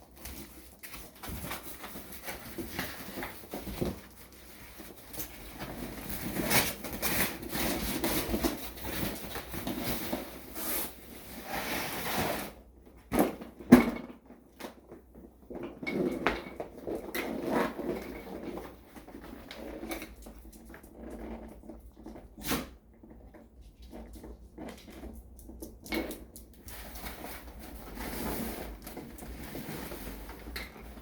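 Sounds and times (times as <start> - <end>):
packaging rustling and crinkling: 0.0 - 12.6, 26.6 - 31.0.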